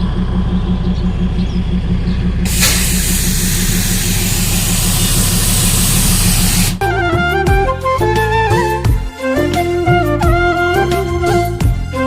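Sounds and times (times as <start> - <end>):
locomotive engine rumbling: 0.0 - 7.2
loud steam hiss: 2.5 - 6.8.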